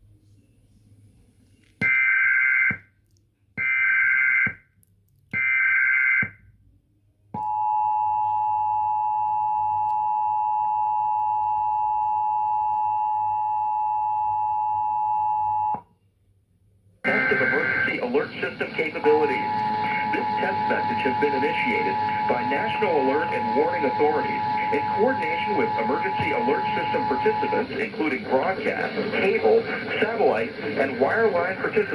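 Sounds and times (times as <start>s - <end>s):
digital data tone bursts: 17.1s - 31.9s
two-tone attention signal: 19.0s - 28.1s.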